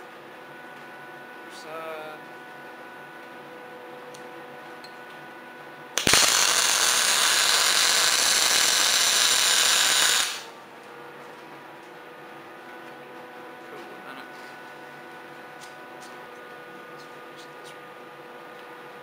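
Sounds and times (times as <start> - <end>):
low shop hum: 0.0 - 19.0
electric welding arc: 6.0 - 10.6.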